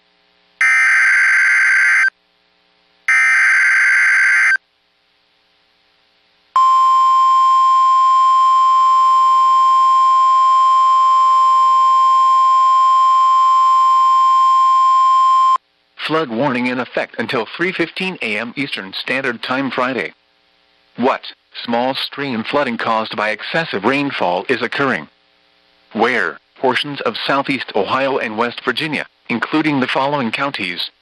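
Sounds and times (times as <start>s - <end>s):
screeching digital data tones: 0.6s - 2.1s, 3.1s - 4.6s
steady alert attention tone: 0.6s - 2.1s, 3.1s - 4.6s.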